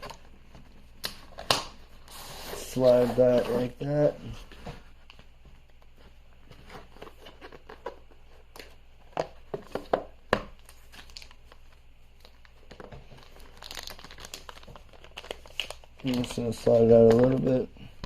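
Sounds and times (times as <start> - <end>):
cardboard packaging rustling: 0.0 - 17.7.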